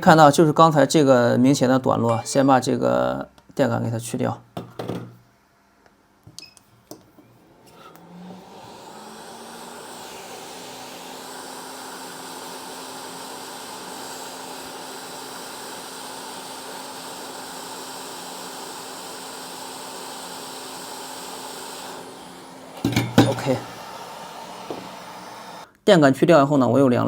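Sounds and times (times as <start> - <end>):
hot-air gun blowing: 7.6 - 25.7.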